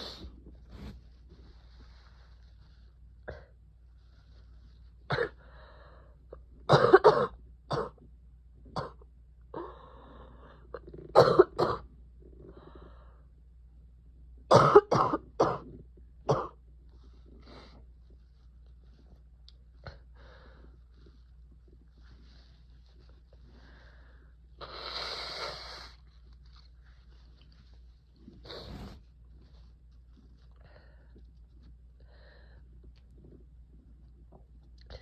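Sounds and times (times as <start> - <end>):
person coughing: 6.7 - 8.0, 11.1 - 11.8, 14.5 - 15.7.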